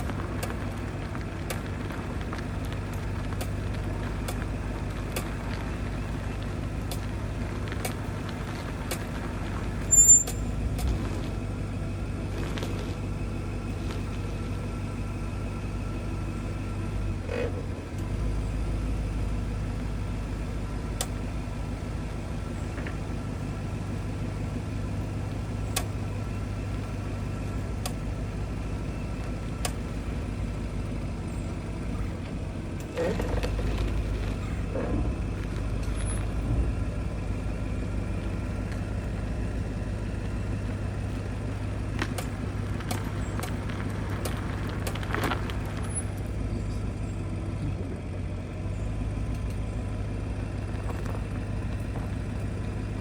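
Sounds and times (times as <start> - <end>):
car driving with low drone: 0.0 - 53.0
high-pitched squeak: 9.9 - 10.5.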